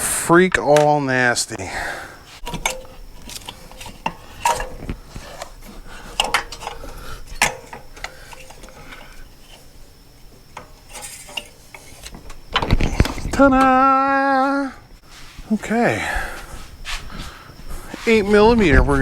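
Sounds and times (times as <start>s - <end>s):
metal tools and parts clinking: 2.4s - 13.8s.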